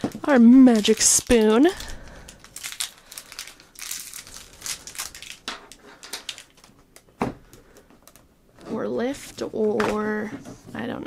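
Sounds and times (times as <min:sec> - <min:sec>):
plastic packaging crinkling: 0:00.0 - 0:07.1.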